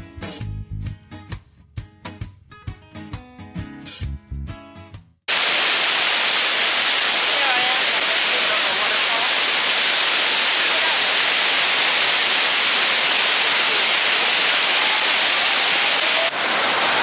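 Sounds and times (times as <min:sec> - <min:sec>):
waterfall rushing: 0:05.3 - 0:17.0.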